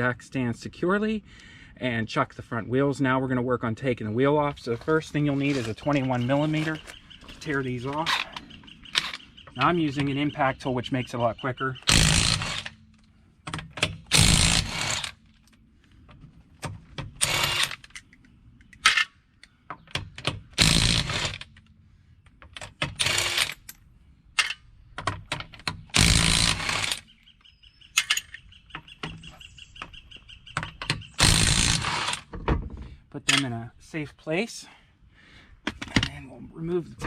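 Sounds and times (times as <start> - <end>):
impact wrench bursts: 11.8 - 12.8, 13.8 - 15.2, 17.2 - 17.8, 20.3 - 21.5, 22.8 - 23.7, 25.9 - 27.0, 31.0 - 32.3.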